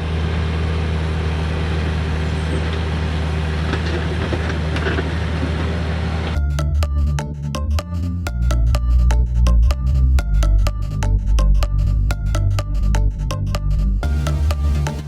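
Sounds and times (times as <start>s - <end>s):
skid steer engine humming: 0.0s - 6.4s.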